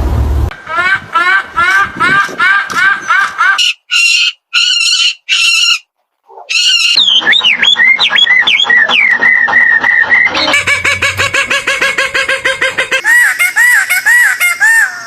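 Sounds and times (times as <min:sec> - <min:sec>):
harsh animal calls: 0:00.7 - 0:15.0
high sliding whistling notes: 0:06.6 - 0:14.3
fast-pulsing animal chorus: 0:06.9 - 0:13.9.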